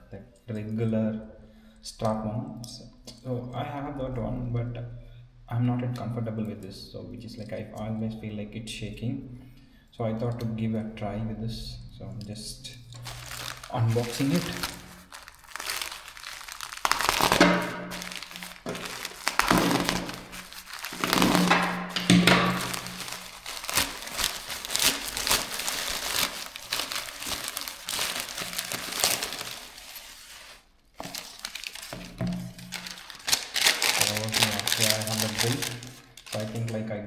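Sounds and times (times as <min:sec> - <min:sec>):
packaging crinkling and rustling: 0:12.9 - 0:36.8.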